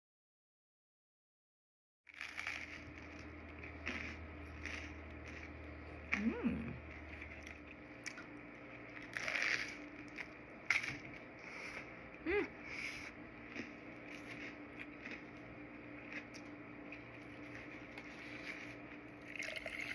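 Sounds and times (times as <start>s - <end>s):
crunching and wet chewing: 2.1s - 19.9s
low hum: 2.2s - 19.9s
short vocal sound: 6.2s - 6.8s, 12.2s - 12.6s.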